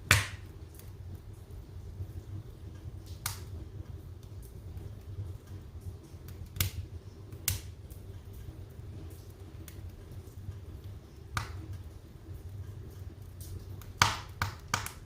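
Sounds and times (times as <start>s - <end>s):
sharp fire pops: 0.0s - 1.0s, 3.0s - 10.5s, 11.3s - 11.8s, 12.9s - 15.0s
low steady rumble: 0.0s - 14.0s
wood fire crackling: 0.0s - 15.0s.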